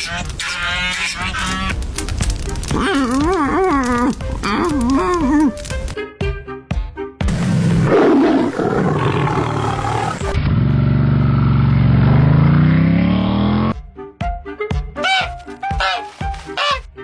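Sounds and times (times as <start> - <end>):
loud animal-like roar: 2.6 - 5.7, 7.6 - 10.4.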